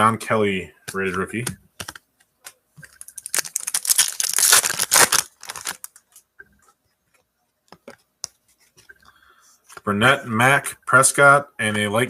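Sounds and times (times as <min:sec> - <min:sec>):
foil card pack ripping open: 0:02.9 - 0:05.9.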